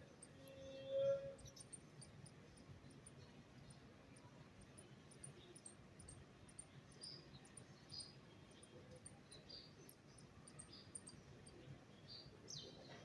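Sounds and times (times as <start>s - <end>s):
small birds chirping: 1.4s - 13.0s.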